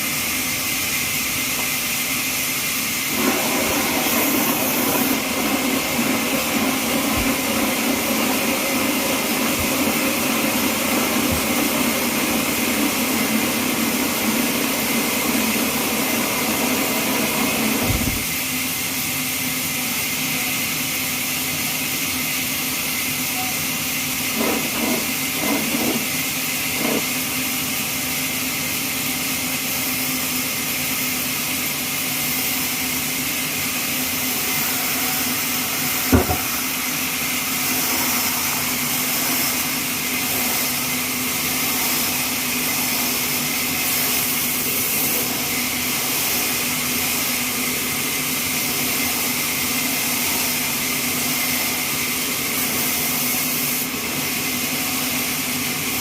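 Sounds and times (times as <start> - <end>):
band sawmill running: 0.0 - 56.0
sharp knock: 36.1 - 36.5.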